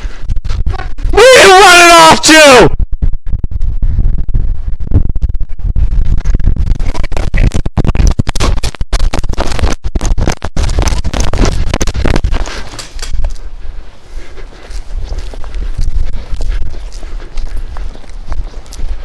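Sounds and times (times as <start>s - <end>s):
microphone rubbing and buffeting: 0.0s - 1.2s, 2.8s - 19.0s
microphone clicks: 2.8s - 13.5s.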